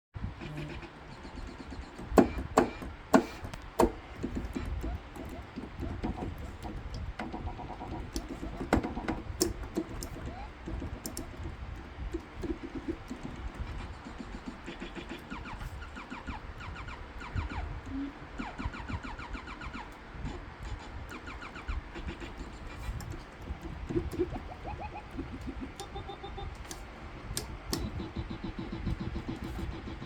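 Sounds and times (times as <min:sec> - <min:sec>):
electronic keyboard notes: 0:21.0 - 0:30.0.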